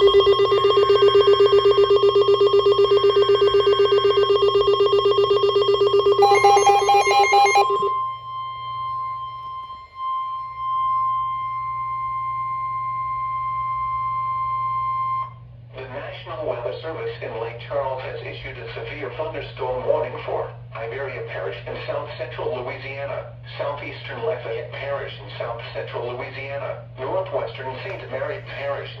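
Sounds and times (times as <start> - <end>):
warbling data bursts: 0.0 - 8.2
steady alert tone: 0.0 - 8.3
pulsing ringing alarm: 0.0 - 15.4.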